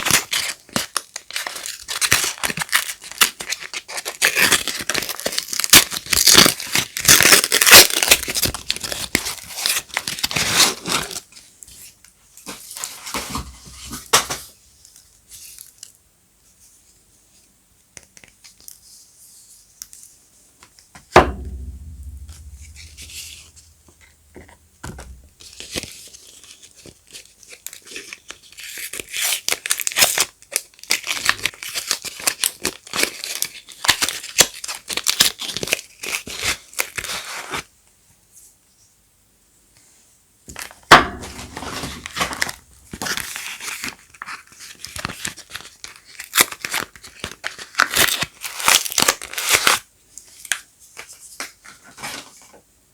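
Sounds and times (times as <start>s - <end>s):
sharp knock with low thud: 21.2s - 25.4s, 40.9s - 42.9s
packaging tearing and crinkling: 47.4s - 49.8s.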